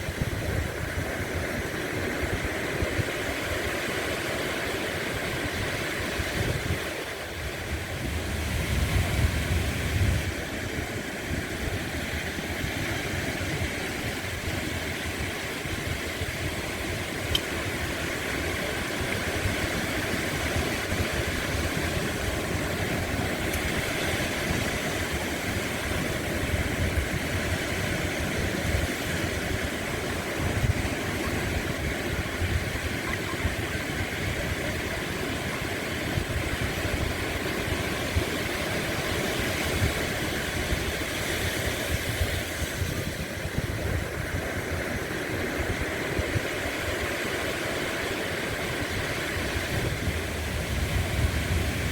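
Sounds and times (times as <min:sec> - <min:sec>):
sea waves breaking on a beach: 0:00.0 - 0:51.9.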